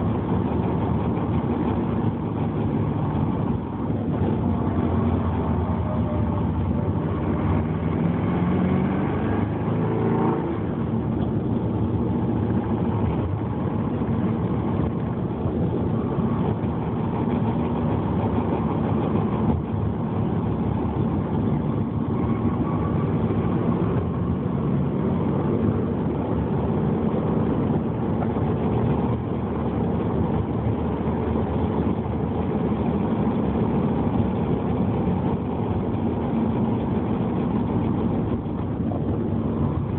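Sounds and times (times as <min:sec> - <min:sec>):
car drivetrain grinding rumble: 0:00.0 - 0:39.9.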